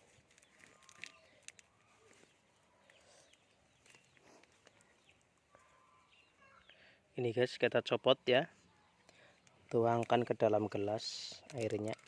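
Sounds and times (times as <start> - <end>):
plastic wrapping rustling: 0.0 - 5.3, 9.2 - 12.0
faint bird chirps: 0.0 - 9.6.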